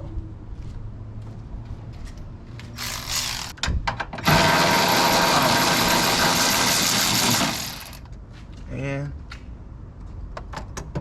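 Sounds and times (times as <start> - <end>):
power ratchet whirring: 2.8 - 3.6, 4.2 - 8.1.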